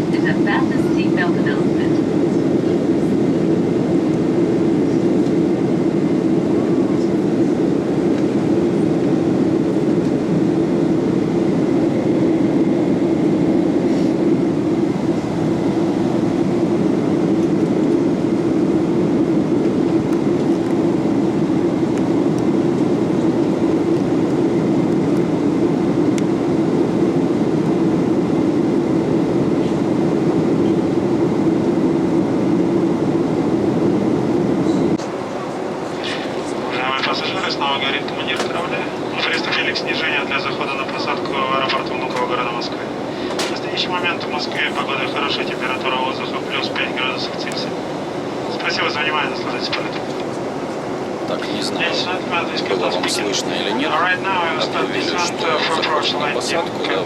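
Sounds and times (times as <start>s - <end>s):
airplane cabin engine rumble: 0.0s - 57.0s.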